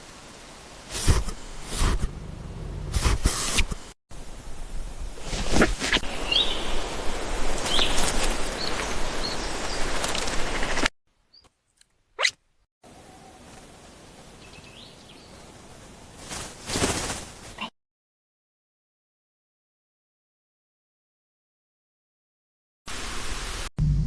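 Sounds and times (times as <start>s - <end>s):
rustling and handling noise: 5.2s - 6.1s, 16.2s - 17.6s
high bird chirps: 6.1s - 6.9s.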